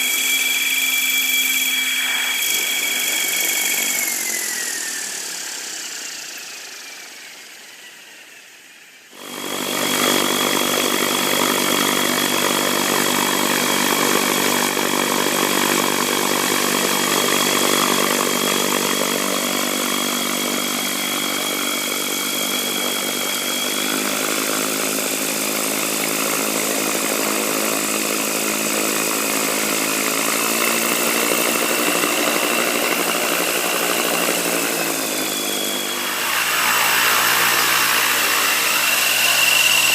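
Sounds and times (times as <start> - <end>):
high-pitched squeal: 0.0 - 26.0, 29.3 - 39.9
machine belt drive running: 9.2 - 39.9.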